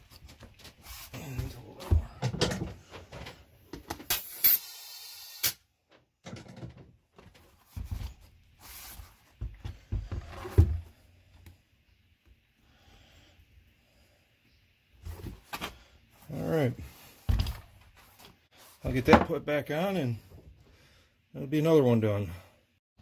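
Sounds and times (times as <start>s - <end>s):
short air hiss: 4.1s - 5.6s
knocks clicks and scrapes of tools: 5.4s - 8.2s.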